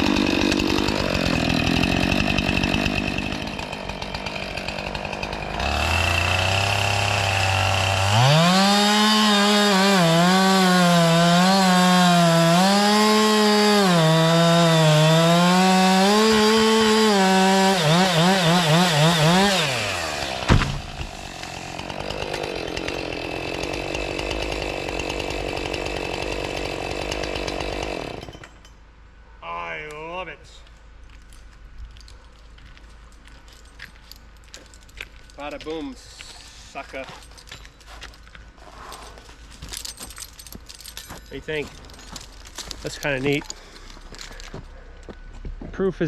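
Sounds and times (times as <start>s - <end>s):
chainsaw cutting wood: 0.0s - 28.6s
sharp crack: 20.3s - 21.2s.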